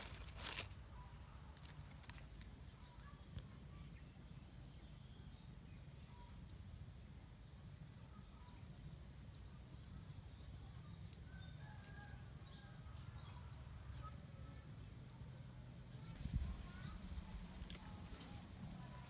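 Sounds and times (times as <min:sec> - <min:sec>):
faint birds chirping: 0:00.0 - 0:19.0
wind rumble on microphone: 0:16.0 - 0:19.0.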